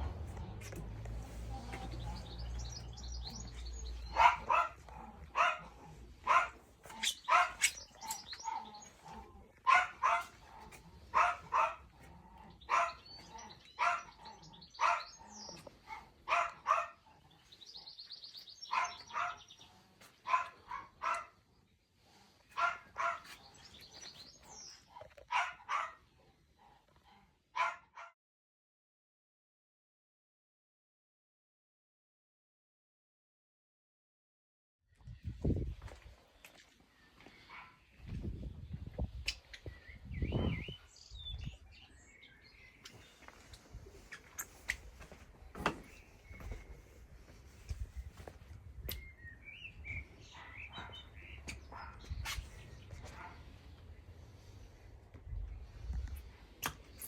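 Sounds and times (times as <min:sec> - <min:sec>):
birds chirping faintly: 0:00.4 - 0:27.7
dog barking: 0:03.3 - 0:17.1, 0:18.7 - 0:19.6, 0:20.2 - 0:21.4, 0:22.5 - 0:23.6, 0:25.0 - 0:26.1, 0:27.5 - 0:28.2, 0:37.4 - 0:37.8, 0:50.3 - 0:52.4, 0:53.0 - 0:53.5.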